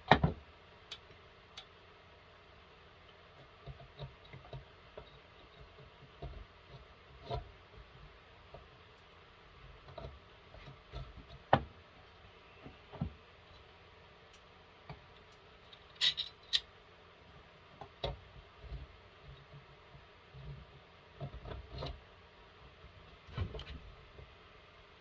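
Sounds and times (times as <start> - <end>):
metal parts clicking and knocking: 15.2 - 16.7.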